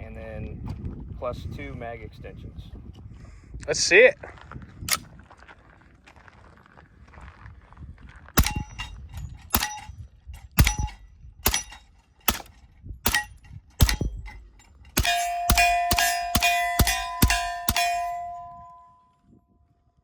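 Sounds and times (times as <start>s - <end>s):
suppressed pistol shots: 8.4s - 8.9s, 10.6s - 18.6s
steel plate ringing: 8.4s - 9.9s, 10.5s - 12.5s, 13.1s - 18.9s.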